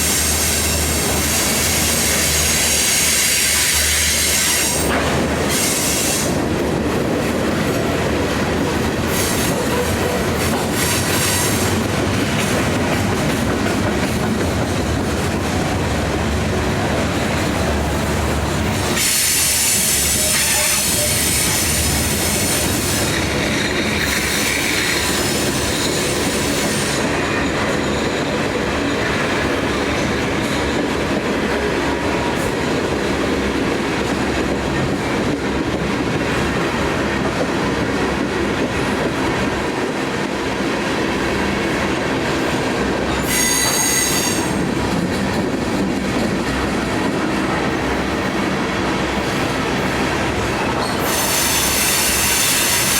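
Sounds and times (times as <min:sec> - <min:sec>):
train wheels rumbling on rail: 0:00.0 - 0:52.9
metallic wheel squeal: 0:43.2 - 0:44.6.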